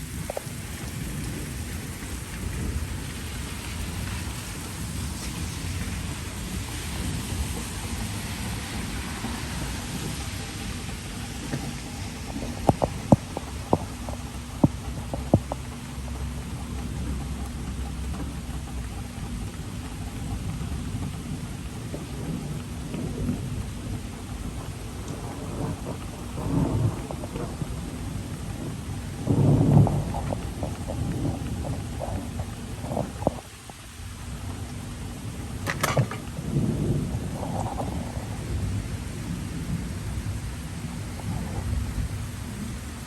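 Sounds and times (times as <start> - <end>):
low rolling thunder: 0.0 - 43.0
steady rain: 0.0 - 43.0.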